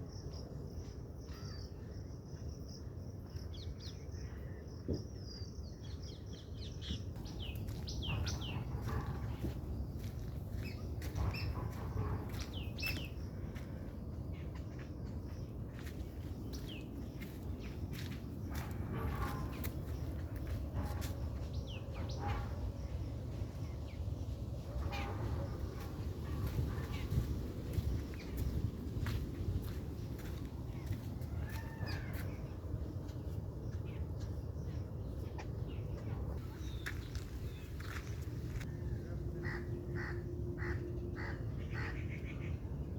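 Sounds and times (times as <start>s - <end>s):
steady low rumble: 2.0s - 42.9s
birds chirping: 3.6s - 42.9s.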